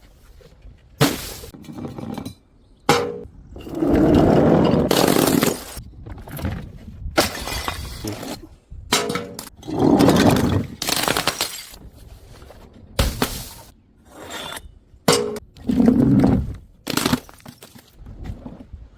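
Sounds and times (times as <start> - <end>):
glass bottles smashing: 10.2 - 11.8.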